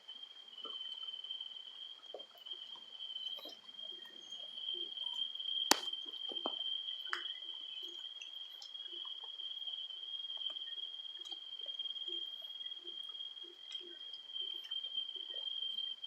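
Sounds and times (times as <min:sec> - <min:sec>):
cricket trilling: 0:00.0 - 0:16.0
sharp click: 0:05.7 - 0:05.9.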